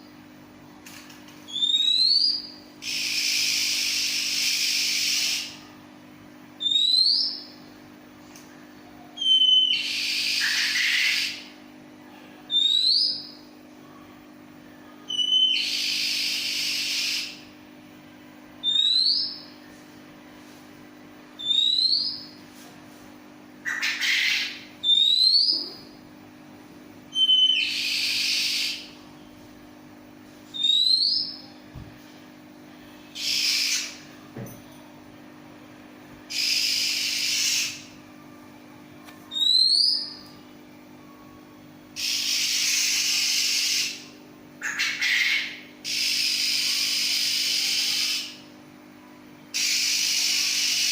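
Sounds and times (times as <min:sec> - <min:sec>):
steady low hum: 0:00.0 - 0:50.9
bird singing whistles and scratchy phrases: 0:01.5 - 0:05.6, 0:06.6 - 0:07.5, 0:09.2 - 0:11.5, 0:12.5 - 0:13.4, 0:15.1 - 0:17.4, 0:18.6 - 0:19.5, 0:21.4 - 0:22.4, 0:23.7 - 0:25.7, 0:27.2 - 0:28.9, 0:30.5 - 0:31.5, 0:33.2 - 0:34.0, 0:36.3 - 0:37.9, 0:39.3 - 0:40.2, 0:42.0 - 0:44.0, 0:44.7 - 0:48.4.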